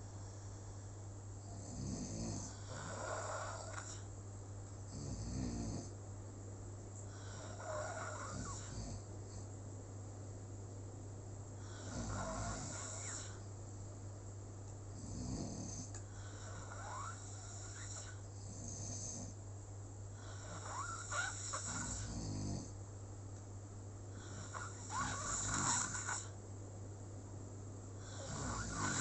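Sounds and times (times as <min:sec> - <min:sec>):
steady low hum: 0:00.0 - 0:29.0
whistling snoring: 0:01.5 - 0:04.1, 0:07.2 - 0:09.0, 0:11.7 - 0:13.4, 0:15.1 - 0:19.4, 0:20.2 - 0:22.7, 0:24.2 - 0:26.4, 0:28.0 - 0:29.0.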